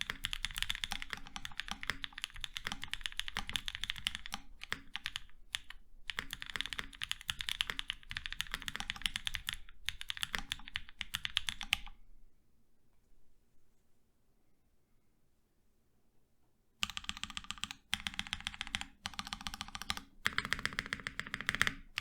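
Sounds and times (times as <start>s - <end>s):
fast typing on mechanical keyboard: 0.0s - 12.0s, 16.8s - 22.0s.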